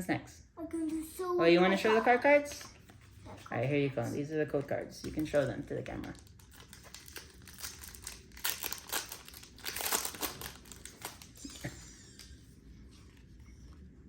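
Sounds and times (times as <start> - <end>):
foil wrapper crinkling: 5.2 - 11.8.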